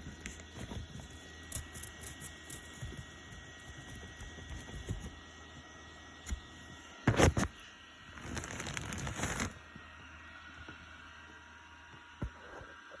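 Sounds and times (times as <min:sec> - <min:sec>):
rustling and scraping: 0:00.0 - 0:05.3, 0:07.0 - 0:09.6.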